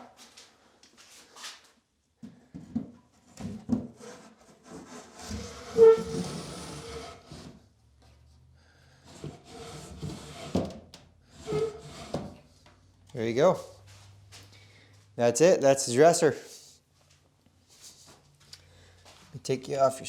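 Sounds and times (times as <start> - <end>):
wood scraping on wood: 3.9 - 7.6, 9.1 - 12.4.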